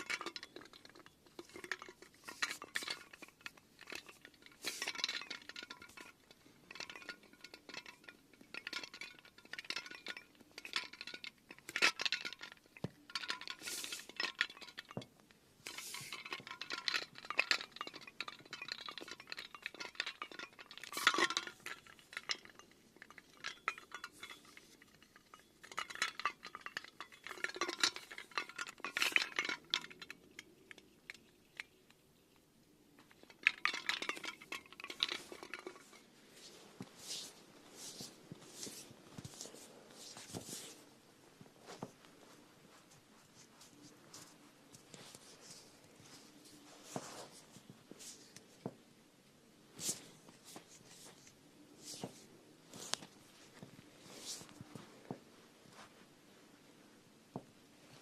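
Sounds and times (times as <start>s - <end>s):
small hard objects clinking: 0.0s - 41.0s.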